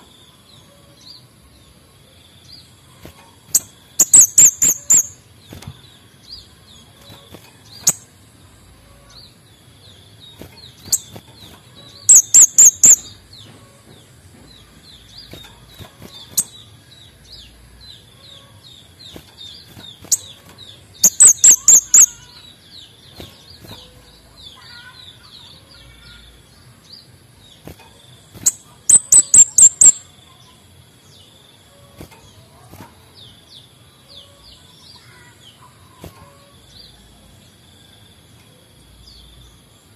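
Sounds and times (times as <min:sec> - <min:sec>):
sharp bird chips: 0:02.8 - 0:08.2, 0:10.2 - 0:13.2, 0:15.1 - 0:16.9, 0:19.0 - 0:25.3, 0:27.6 - 0:30.1
high twittering: 0:03.5 - 0:05.2, 0:11.9 - 0:13.1, 0:21.0 - 0:22.4, 0:28.4 - 0:30.1
bird song bursts of high notes: 0:11.8 - 0:13.2, 0:20.0 - 0:25.2, 0:28.3 - 0:30.1.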